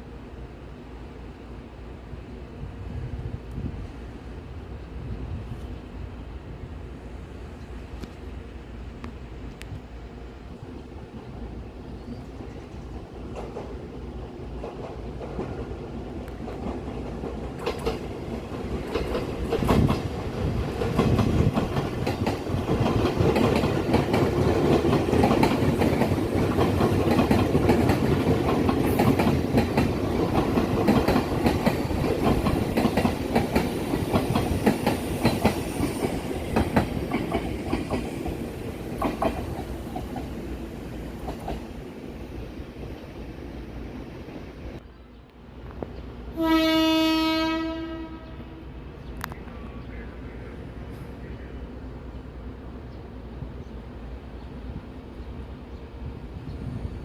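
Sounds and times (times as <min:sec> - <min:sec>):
train rumbling: 0:00.0 - 0:57.0
wheels clicking over rail joints: 0:16.3 - 0:40.4.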